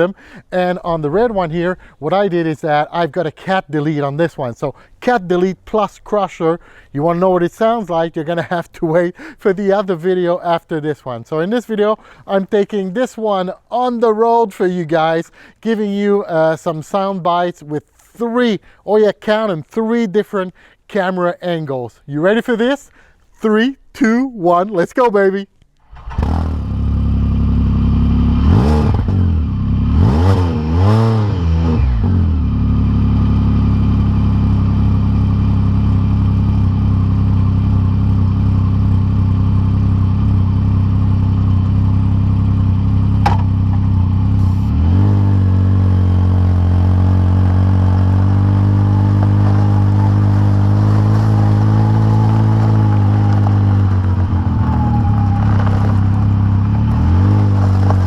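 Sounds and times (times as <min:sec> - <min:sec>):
motorcycle engine revving: 0:25.9 - 0:58.0.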